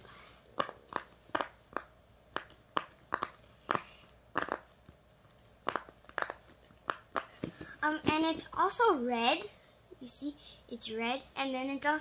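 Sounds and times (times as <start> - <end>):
fidget toy bubbles popping: 0.6 - 5.0, 5.6 - 7.6.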